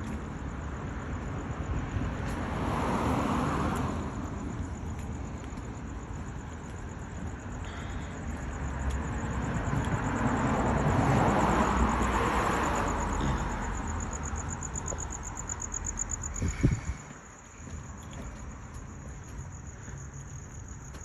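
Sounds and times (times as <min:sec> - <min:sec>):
car passing by: 0:01.4 - 0:04.9, 0:08.2 - 0:17.2.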